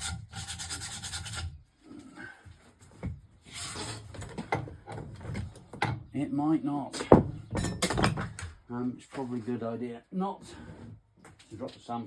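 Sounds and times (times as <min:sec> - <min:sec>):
sandpaper rubbing on wood: 0:00.0 - 0:01.5.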